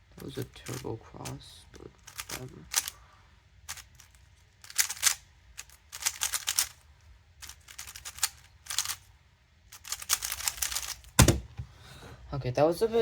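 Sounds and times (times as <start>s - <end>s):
puzzle cube plastic clicking: 0.2s - 3.0s, 3.6s - 6.8s, 7.4s - 9.1s, 9.7s - 11.6s.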